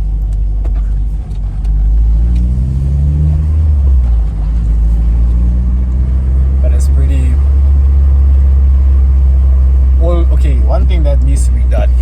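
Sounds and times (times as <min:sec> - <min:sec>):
car engine accelerating: 0:00.0 - 0:12.0
road rumble inside car: 0:00.0 - 0:12.0.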